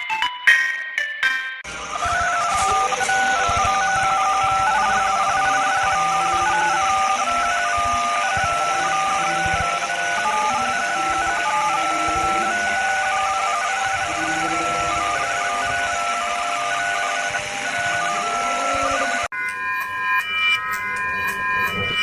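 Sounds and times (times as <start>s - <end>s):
loud static hiss: 1.7s - 19.3s
steady alert tone: 1.7s - 22.0s
high stepping beeps: 2.0s - 16.0s.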